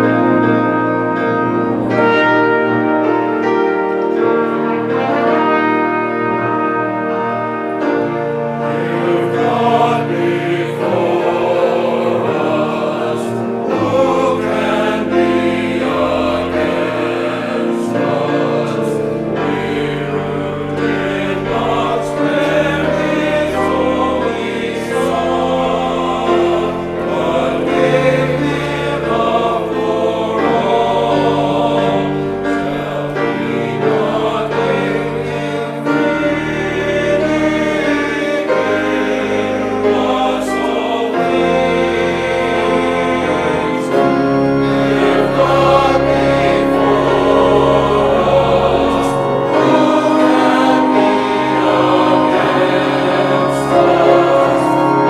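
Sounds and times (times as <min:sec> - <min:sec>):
choir singing a hymn: 0:00.0 - 0:55.0
piano chords: 0:00.0 - 0:55.0.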